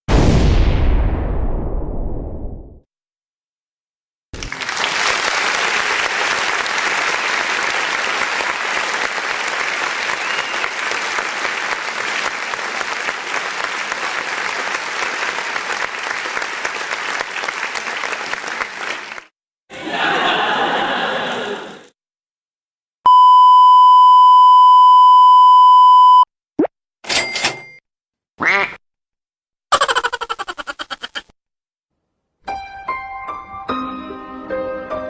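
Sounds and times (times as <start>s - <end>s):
crowd applause: 4.4s - 21.9s.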